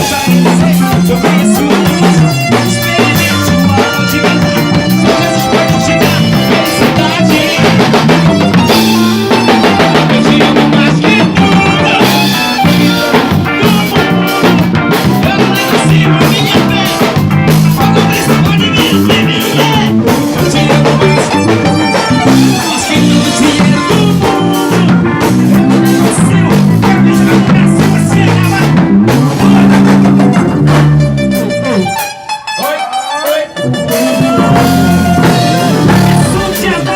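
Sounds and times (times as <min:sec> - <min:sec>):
bass guitar: 0:00.0 - 0:36.9
drum kit beat: 0:00.0 - 0:36.9
gospel band playing live: 0:00.0 - 0:36.9
guitar: 0:00.0 - 0:36.9.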